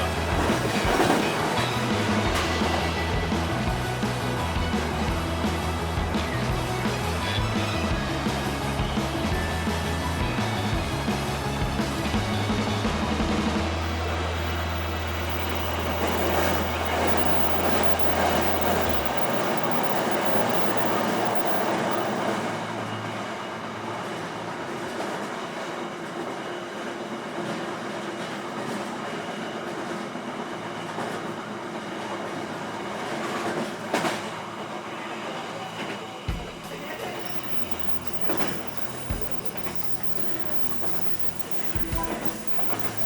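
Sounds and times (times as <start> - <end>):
train wheels rumbling on rails: 0.0 - 43.0.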